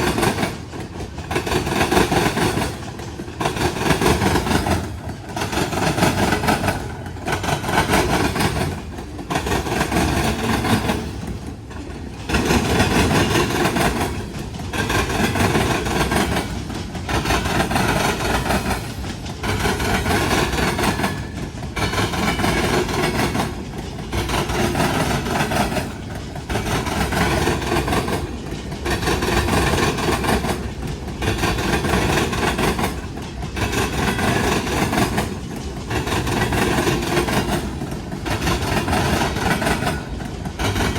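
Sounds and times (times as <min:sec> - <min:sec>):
train wheels clattering: 0:00.0 - 0:40.9.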